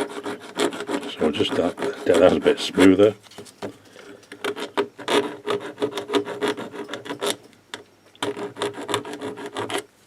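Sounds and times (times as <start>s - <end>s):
hand file rasping on metal: 0.0s - 3.1s, 4.4s - 7.5s, 8.2s - 9.9s.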